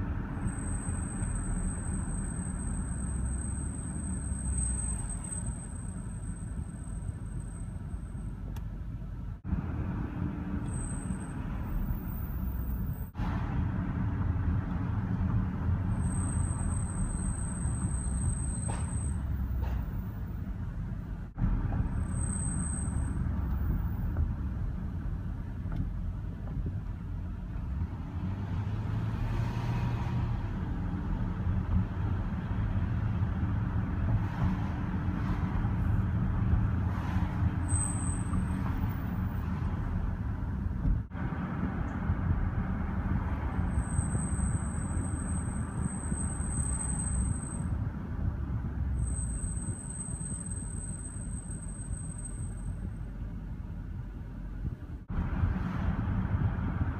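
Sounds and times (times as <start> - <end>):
road and tyre rumble: 0.0 - 56.9
high-pitched brake squeal: 0.3 - 8.4, 10.6 - 13.0, 15.9 - 20.1, 21.9 - 24.0, 37.6 - 39.1, 43.6 - 47.8, 49.0 - 53.1.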